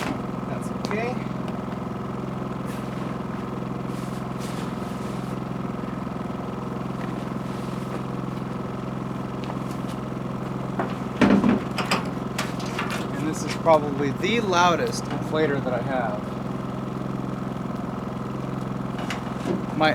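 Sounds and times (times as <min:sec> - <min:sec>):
air mattress inflator humming: 0:00.0 - 0:19.9
loud knocks: 0:10.8 - 0:12.1.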